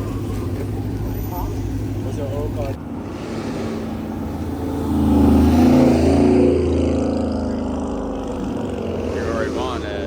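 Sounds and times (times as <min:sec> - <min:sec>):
car engine revving: 0:02.8 - 0:10.0.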